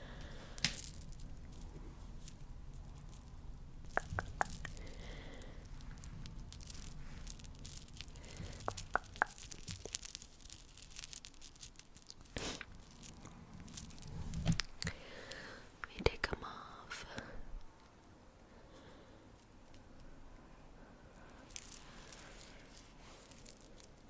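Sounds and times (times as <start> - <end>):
faint crackling: 0.0 - 18.1
sharp sticky clicks and pops: 3.8 - 5.0, 5.8 - 11.0.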